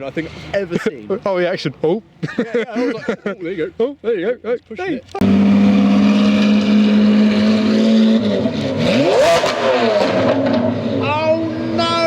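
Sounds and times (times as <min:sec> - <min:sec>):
sports car engine revving: 0:05.2 - 0:11.8.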